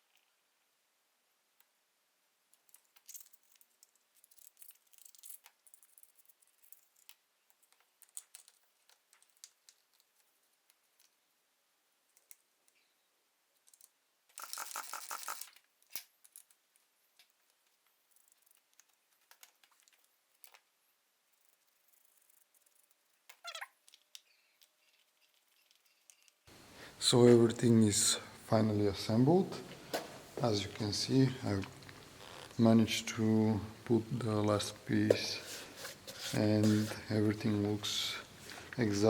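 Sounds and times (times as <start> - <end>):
small parts clicking and tapping: 2.5 - 11.2, 12.0 - 12.9, 13.5 - 26.5.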